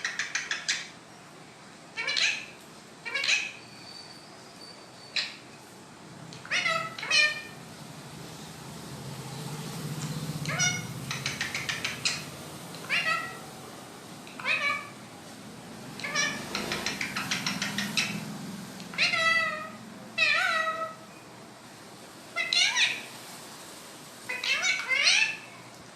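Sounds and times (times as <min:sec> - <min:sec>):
parrot meow-like cries: 0:02.0 - 0:03.6, 0:06.4 - 0:07.6, 0:10.4 - 0:12.2, 0:12.8 - 0:13.4, 0:14.3 - 0:15.0, 0:16.0 - 0:18.2, 0:18.9 - 0:21.1, 0:22.4 - 0:23.1, 0:24.3 - 0:25.5
parrot rapid clicking: 0:10.0 - 0:12.9, 0:16.0 - 0:18.2.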